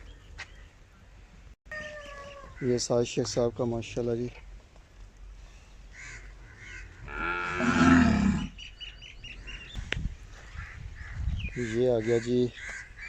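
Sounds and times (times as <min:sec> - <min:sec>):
birds chirping: 0:05.9 - 0:13.0
cow mooing: 0:07.1 - 0:08.6.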